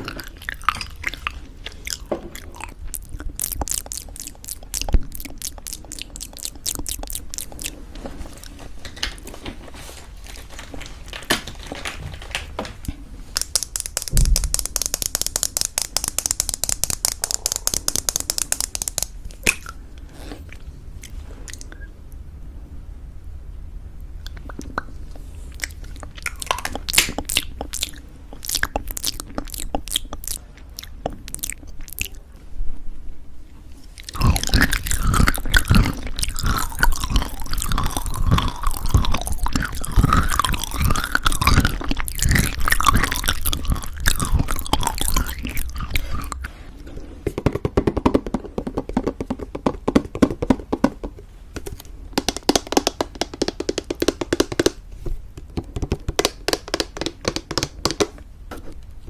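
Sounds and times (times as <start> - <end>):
crunchy chewing: 0.0 - 8.6, 25.5 - 32.2, 33.8 - 46.6
sharp clicks: 13.4 - 19.6.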